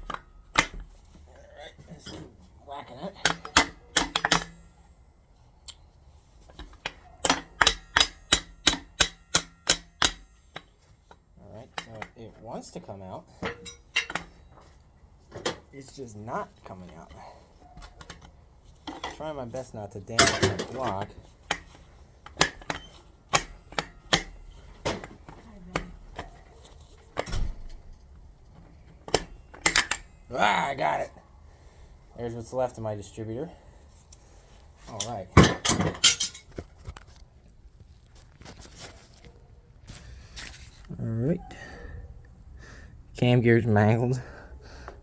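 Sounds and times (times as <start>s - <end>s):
hammer striking metal: 7.2s - 10.7s.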